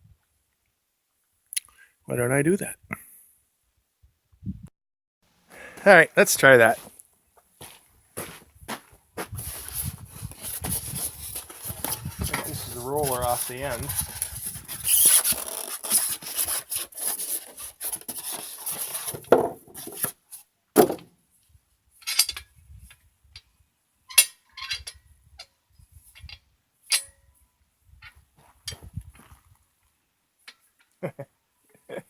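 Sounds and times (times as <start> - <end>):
rubbing and scraping: 9.3 - 20.4.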